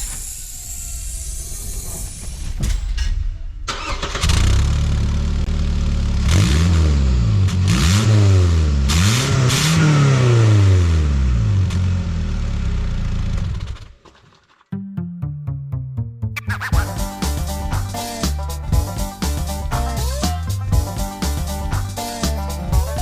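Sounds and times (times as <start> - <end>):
car engine starting and revving: 3.7 - 14.0.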